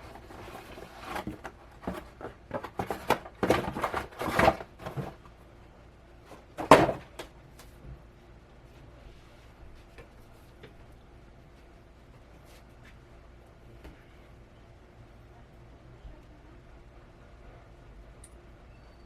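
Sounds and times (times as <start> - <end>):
cardboard box being handled: 0.0 - 5.2.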